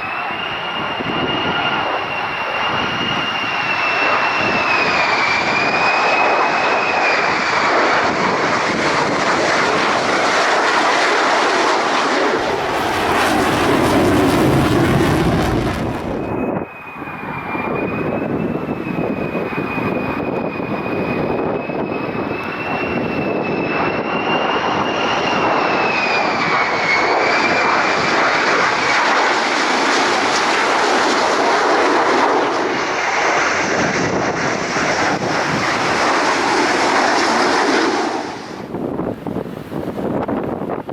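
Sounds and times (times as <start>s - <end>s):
jet engine roaring and whining: 0.0s - 40.9s
harsh jet rush: 3.6s - 16.6s, 22.6s - 38.9s.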